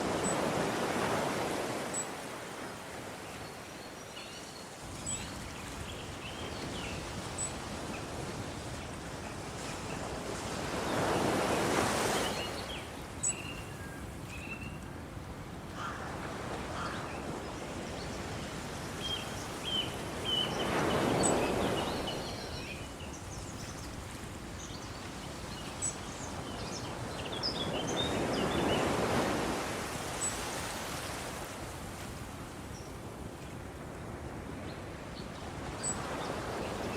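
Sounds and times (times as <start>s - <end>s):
waves washing on shore: 0.0s - 3.7s.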